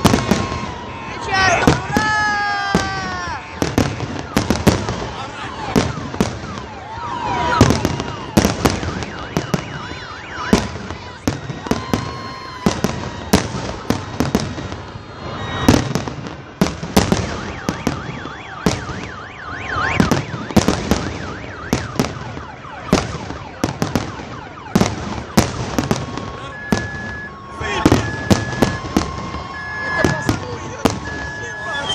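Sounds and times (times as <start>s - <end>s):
warbling wail: 0.0s - 15.8s, 25.6s - 31.9s
fireworks bursting: 0.0s - 31.9s
whistling fireworks: 0.0s - 31.9s.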